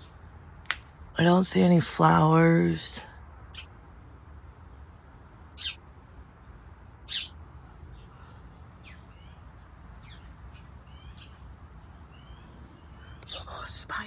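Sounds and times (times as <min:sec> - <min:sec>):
sharp high bird calls: 0:05.6 - 0:05.8, 0:07.1 - 0:07.4
faint bird chirps: 0:07.1 - 0:09.4, 0:12.2 - 0:14.0.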